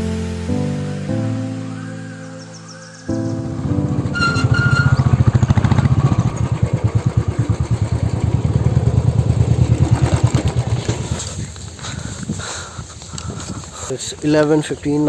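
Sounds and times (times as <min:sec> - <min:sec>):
engine pulsing: 0:03.2 - 0:12.3.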